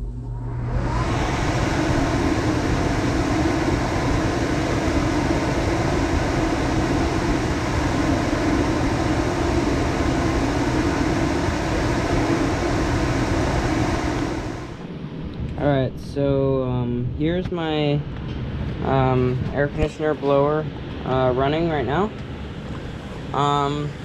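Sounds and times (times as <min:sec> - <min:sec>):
air conditioner blower rushing air: 0:00.0 - 0:24.0.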